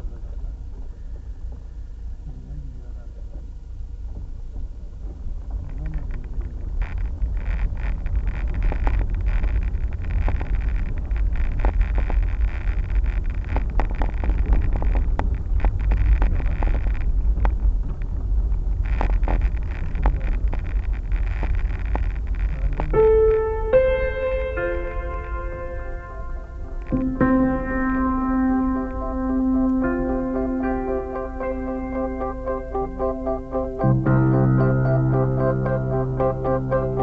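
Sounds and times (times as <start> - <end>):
vehicle rumbling on rough road: 0.0 - 37.0
stones crunching under wheels: 4.0 - 31.3.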